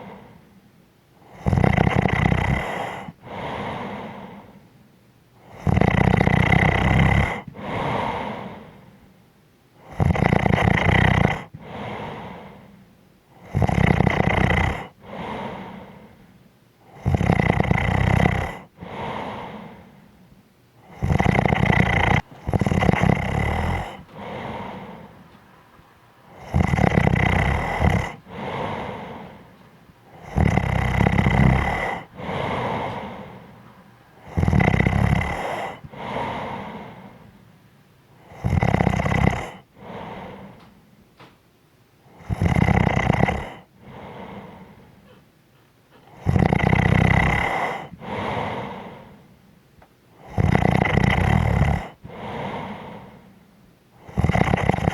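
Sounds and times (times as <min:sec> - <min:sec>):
person snoring: 0:00.0 - 0:00.5, 0:01.2 - 0:04.6, 0:05.4 - 0:09.0, 0:09.8 - 0:16.3, 0:16.9 - 0:20.2, 0:20.8 - 0:25.3, 0:26.3 - 0:33.6, 0:34.2 - 0:37.3, 0:38.2 - 0:40.8, 0:42.1 - 0:45.1, 0:46.0 - 0:49.3, 0:50.2 - 0:53.3, 0:54.0 - 0:54.9.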